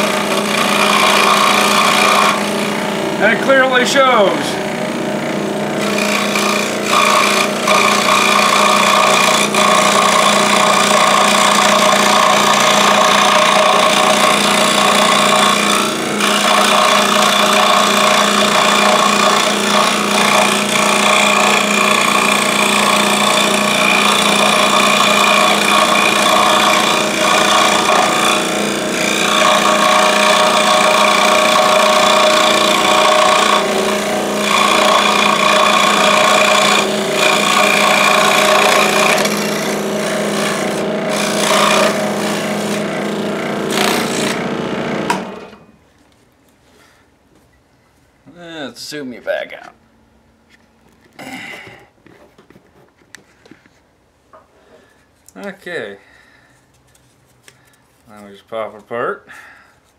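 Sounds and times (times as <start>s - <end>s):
scroll saw cutting wood: 0.0s - 45.6s.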